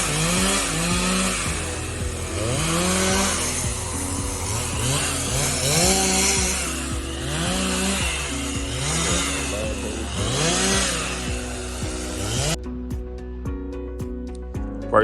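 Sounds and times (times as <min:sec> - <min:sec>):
chainsaw revving: 0:00.0 - 0:12.6
background music with beat: 0:00.0 - 0:15.0.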